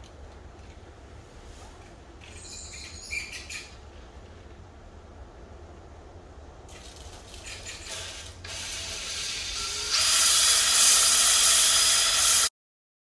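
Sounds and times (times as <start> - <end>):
cylinder hone grinding in bore: 7.8 - 12.5.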